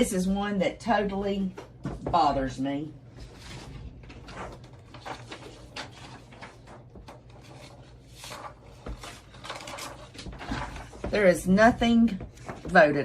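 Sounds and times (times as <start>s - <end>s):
low electrical hum: 0.0s - 13.0s
objects rustling and knocking: 3.2s - 13.0s.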